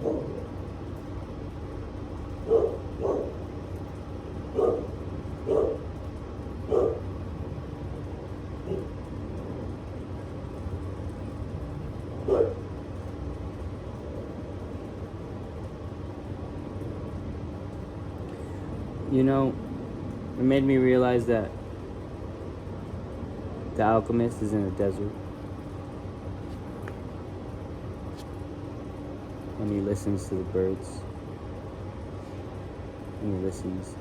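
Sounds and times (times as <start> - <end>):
dog barking: 0.0 - 0.4, 2.4 - 3.4, 4.5 - 5.8, 6.7 - 7.1, 8.6 - 9.0, 12.3 - 12.7
low background rumble: 0.0 - 34.0.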